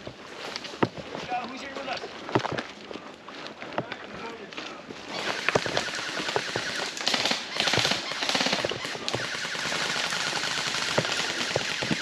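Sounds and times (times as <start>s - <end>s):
airsoft guns full-auto bursts: 5.1s - 12.0s.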